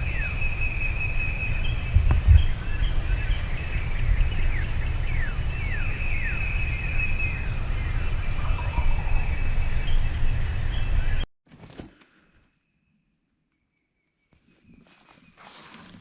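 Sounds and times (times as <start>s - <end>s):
bird calling in falling whistles: 0.0s - 11.2s
low steady rumble: 0.0s - 11.2s.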